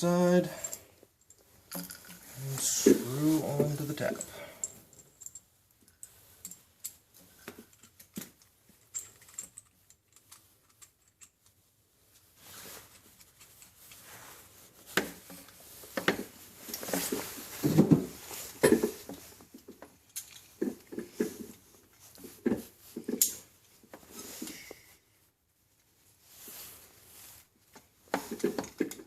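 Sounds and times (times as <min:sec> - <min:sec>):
handling knocks and rustling: 0:00.5 - 0:25.0, 0:25.8 - 0:29.0
clicks of fittings being screwed: 0:00.6 - 0:02.2.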